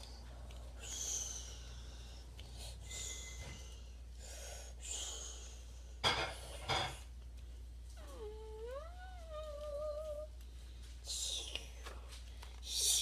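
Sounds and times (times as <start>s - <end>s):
person breathing softly: 0.7s - 6.0s.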